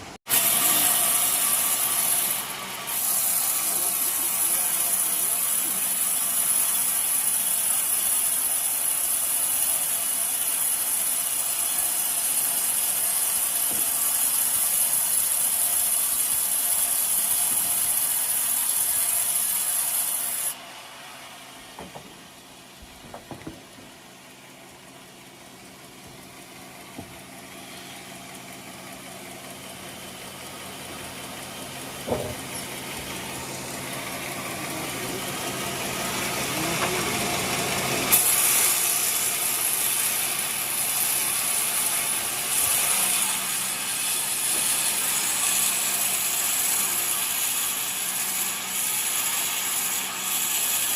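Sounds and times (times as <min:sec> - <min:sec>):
sawmill sawing log: 0:00.0 - 0:50.9
knocks: 0:21.7 - 0:22.2, 0:22.8 - 0:24.0, 0:26.9 - 0:27.2, 0:32.0 - 0:32.5.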